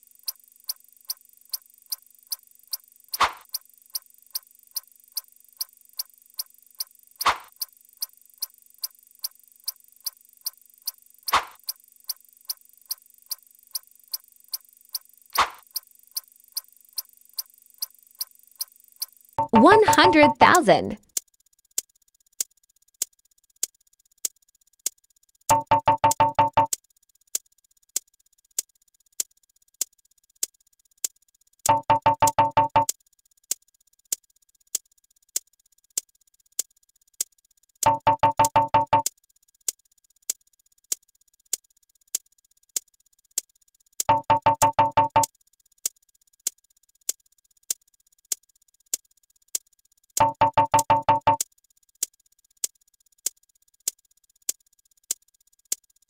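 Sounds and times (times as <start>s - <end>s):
electronic ticking: 19.4s - 20.4s, 25.5s - 26.7s, 31.7s - 32.9s, 37.9s - 39.0s, 44.1s - 45.3s, 50.2s - 51.4s
rapid pitched beeps: 25.5s - 26.7s, 31.7s - 32.8s, 37.9s - 39.0s, 44.1s - 45.3s, 50.2s - 51.4s.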